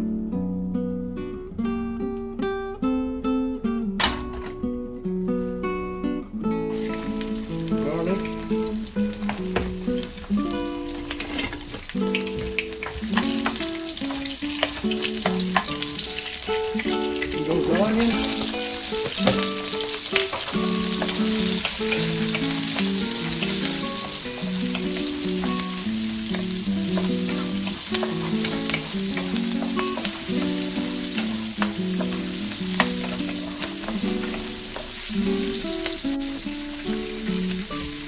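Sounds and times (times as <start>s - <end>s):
melody of held notes: 0.0s - 38.0s
garlic and onions sizzling in oil: 6.7s - 38.0s
utensil clicking against pan: 9.0s - 35.4s.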